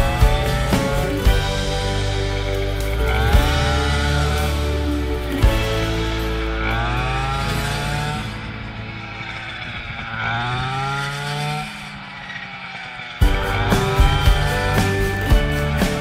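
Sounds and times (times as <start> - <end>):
music: 0.0 - 9.7, 13.2 - 16.0
small petrol engine revving: 0.0 - 16.0.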